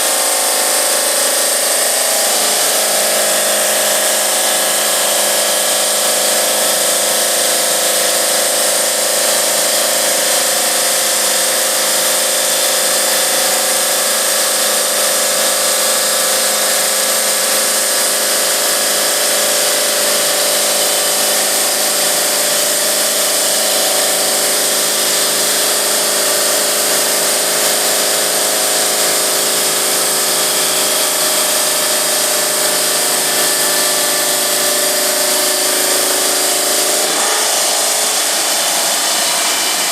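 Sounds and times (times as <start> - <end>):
saw blade grinding stone: 16.2 - 39.9.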